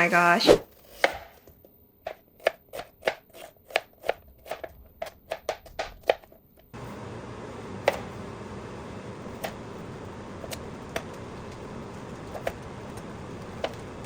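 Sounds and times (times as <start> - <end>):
knife chopping on cutting board: 2.1 - 6.2.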